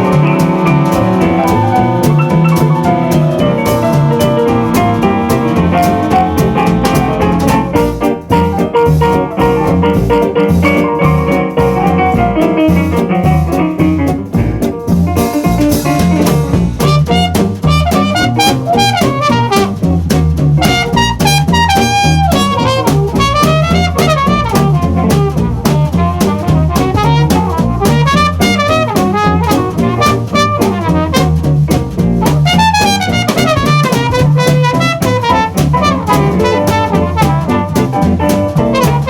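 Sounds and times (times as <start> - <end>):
horn melody with bends: 0.0 - 8.0, 16.8 - 19.9, 20.6 - 31.6, 32.2 - 39.0
swing jazz band music: 0.0 - 39.0.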